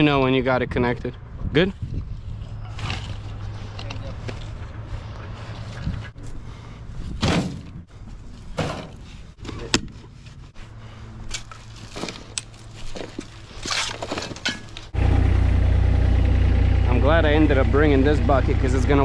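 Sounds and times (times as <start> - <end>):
digging scrapes and knocks: 2.4 - 6.4, 7.1 - 15.0
skid steer engine running: 14.9 - 19.0.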